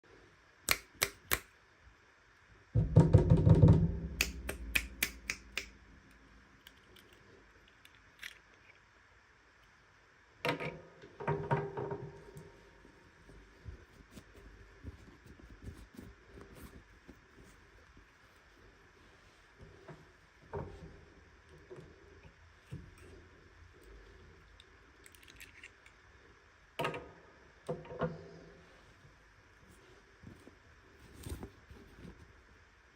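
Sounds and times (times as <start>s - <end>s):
sharp clicks: 0.7s - 1.5s, 4.2s - 5.7s
sharp plastic clacks: 0.7s - 1.5s, 4.2s - 5.7s.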